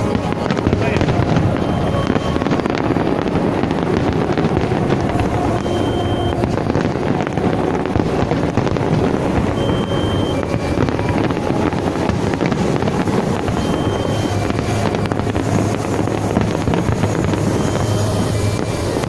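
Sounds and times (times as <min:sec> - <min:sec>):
steady rumbling noise: 0:00.0 - 0:19.0
wind buffeting microphone: 0:00.0 - 0:19.0
faint two-note beep: 0:01.6 - 0:02.5, 0:05.6 - 0:06.4, 0:09.6 - 0:11.1.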